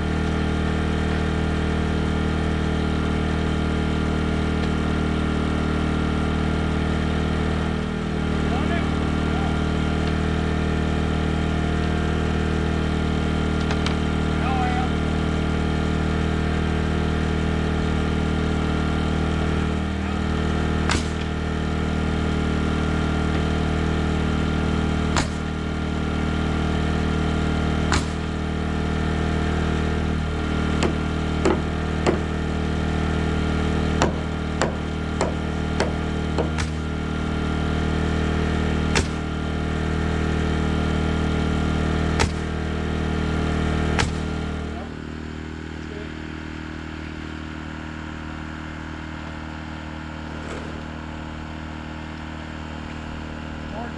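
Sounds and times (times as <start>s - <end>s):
small engine droning: 0.0s - 53.9s
sharp strikes on wood: 20.8s - 21.5s, 25.1s - 25.7s, 27.9s - 28.4s, 30.8s - 32.3s, 34.0s - 37.0s, 38.8s - 39.4s, 42.1s - 42.8s, 44.0s - 44.7s.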